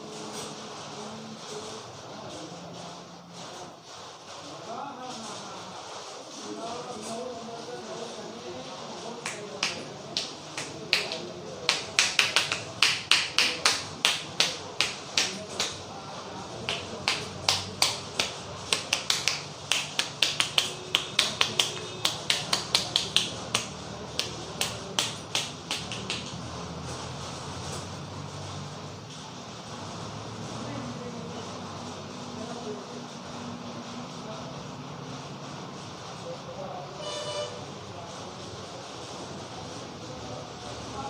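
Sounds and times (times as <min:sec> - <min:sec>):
hands slapping a head: 0:09.2 - 0:15.8, 0:16.6 - 0:26.4.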